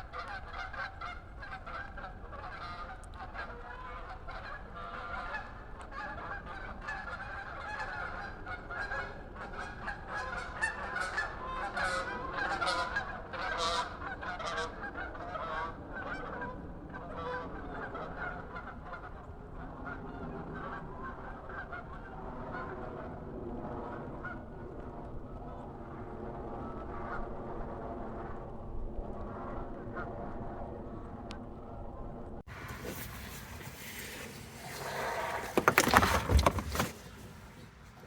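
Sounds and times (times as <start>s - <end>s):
geese honking: 0.0s - 16.3s, 34.5s - 38.0s.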